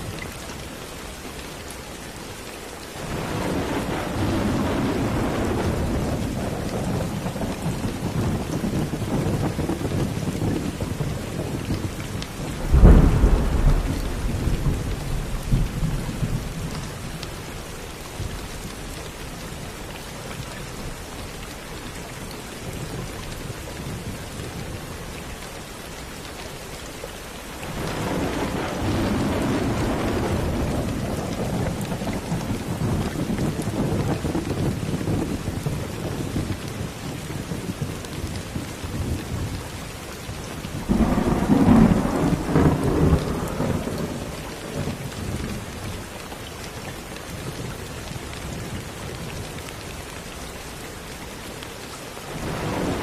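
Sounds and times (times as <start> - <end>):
steady rain: 0.0 - 53.0
sharp thunderclap: 3.0 - 10.8, 12.6 - 16.6, 27.7 - 35.4, 40.9 - 44.9, 52.3 - 53.0
low thunder rumble: 3.0 - 17.5, 27.6 - 38.2, 40.8 - 45.7, 52.3 - 53.0.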